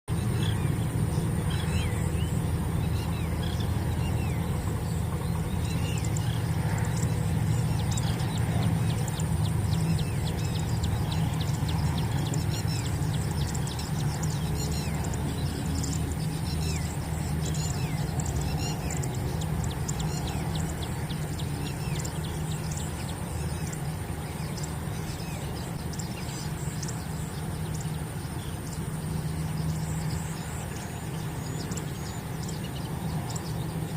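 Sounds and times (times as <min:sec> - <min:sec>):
bird calls and chirps: 0:00.1 - 0:33.9.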